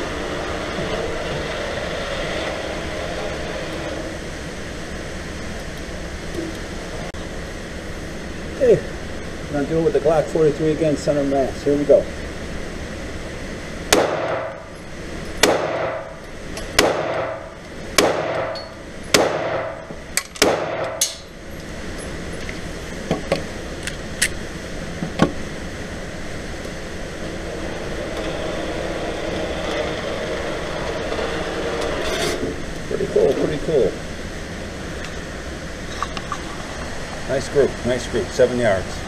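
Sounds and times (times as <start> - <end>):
mechanical hum: 0.0 - 39.0
pistol shots with echo: 13.9 - 14.5, 15.4 - 16.0, 16.8 - 17.4, 18.0 - 19.8, 20.4 - 21.2.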